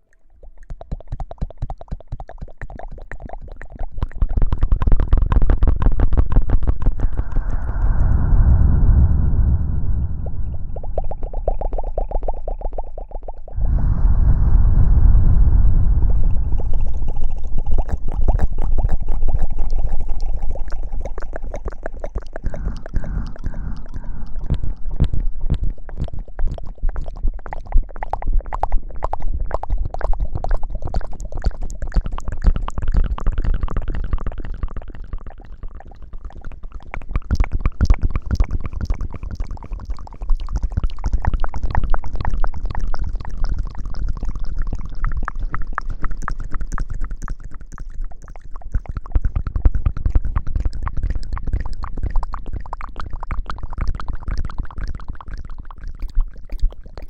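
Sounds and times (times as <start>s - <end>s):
low rumble: 6.6s - 12.6s, 13.5s - 21.5s, 22.3s - 26.9s.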